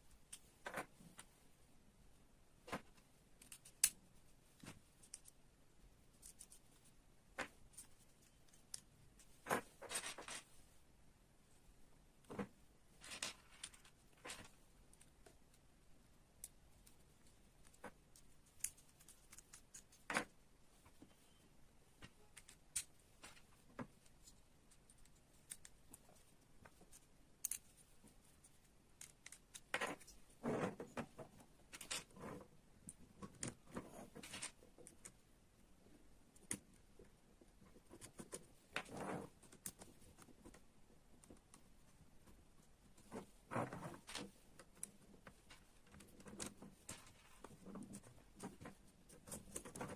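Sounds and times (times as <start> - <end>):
small plastic parts clicking: 2.6 - 4.0, 4.6 - 5.4, 6.1 - 6.6, 7.3 - 10.4, 16.3 - 21.0, 22.0 - 27.8, 28.4 - 30.2, 37.7 - 42.4.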